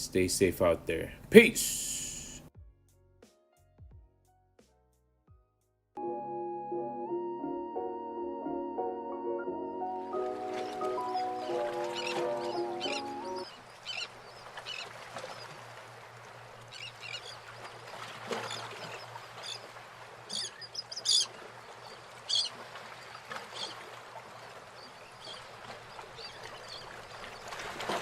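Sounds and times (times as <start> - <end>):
birds chirping: 10.0 - 15.6, 20.3 - 23.8, 24.4 - 27.6.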